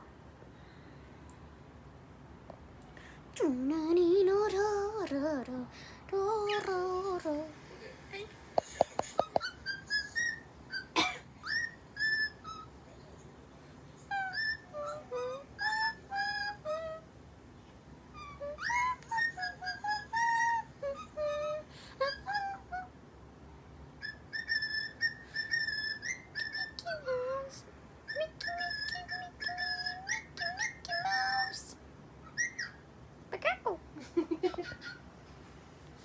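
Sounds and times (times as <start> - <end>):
bird whistling a tune: 9.2 - 12.8, 14.1 - 17.0, 18.2 - 22.8, 24.0 - 31.6, 32.2 - 32.8.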